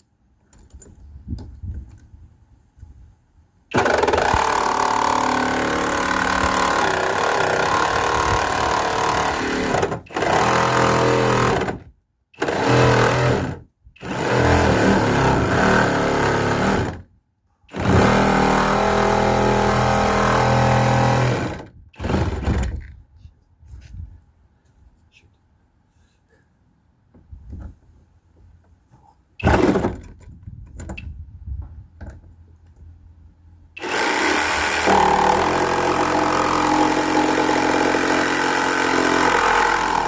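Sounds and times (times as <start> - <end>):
jigsaw cutting metal: 3.7 - 11.8, 12.4 - 17.0, 17.7 - 22.8, 33.8 - 40.0.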